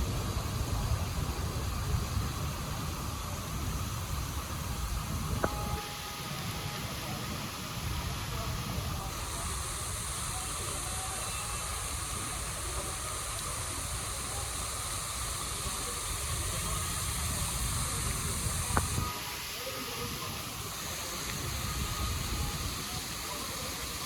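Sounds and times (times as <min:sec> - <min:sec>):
low fluctuating rumble: 0:00.0 - 0:19.1
heavy rain hissing: 0:00.0 - 0:24.0.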